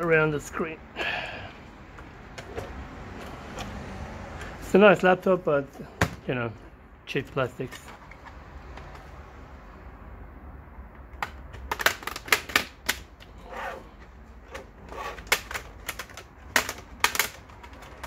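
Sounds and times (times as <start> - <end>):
plastic case clips snapping: 11.2 - 13.2
creaking scrapes: 13.3 - 15.3.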